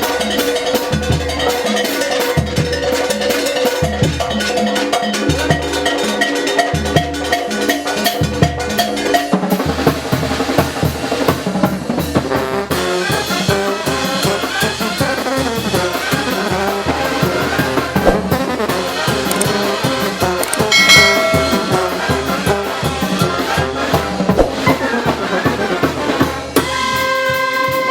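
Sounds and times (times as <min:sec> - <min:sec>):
trumpets and trombones: 0:05.1 - 0:27.9
brass band playing: 0:05.8 - 0:27.9
steady drum beat: 0:08.2 - 0:26.9.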